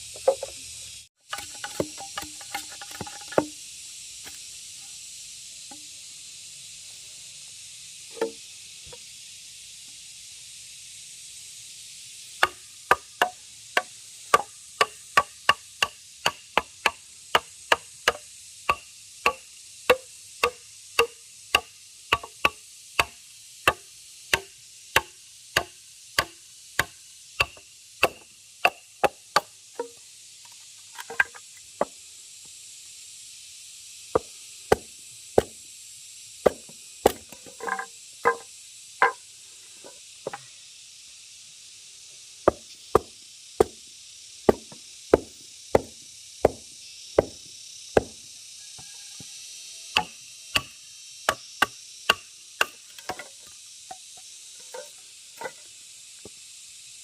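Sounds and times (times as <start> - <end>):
steady high hiss: 0.0 - 57.0
bamboo knocks: 0.2 - 0.6, 1.3 - 3.6, 8.2 - 8.4, 12.4 - 30.0, 31.0 - 31.9, 34.2 - 35.6, 36.5 - 39.2, 42.5 - 43.8, 44.5 - 46.6, 48.0 - 48.2, 50.0 - 50.7.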